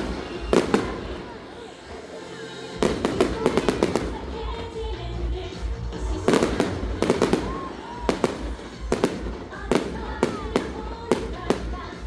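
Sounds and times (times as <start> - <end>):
background music: 0.0 - 12.0
fireworks bangs and crackles: 0.0 - 12.0.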